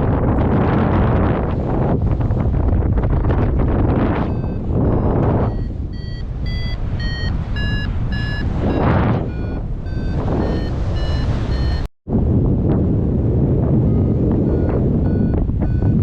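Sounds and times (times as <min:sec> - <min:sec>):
wind rushing over microphone: 0:00.0 - 0:16.0
variometer beeping: 0:03.4 - 0:11.9, 0:13.8 - 0:16.0.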